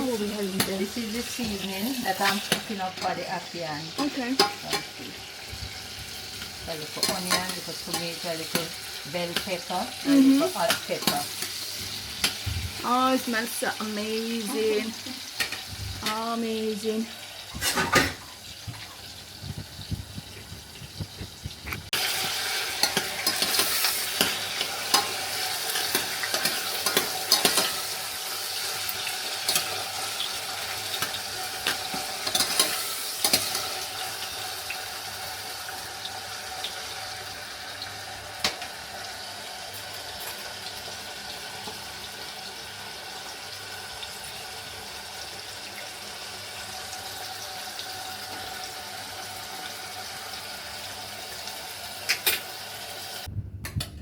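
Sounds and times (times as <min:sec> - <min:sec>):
vegetables sizzling in a frying pan: 0:00.0 - 0:53.3
utensil stirring and clicking on pan: 0:00.1 - 0:05.2, 0:06.0 - 0:12.4, 0:17.6 - 0:34.8.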